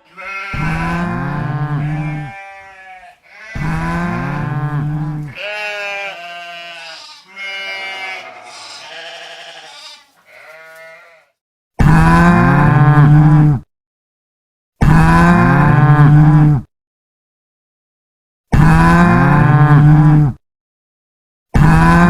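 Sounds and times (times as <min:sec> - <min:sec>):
sheep bleating: 0:00.0 - 0:11.4.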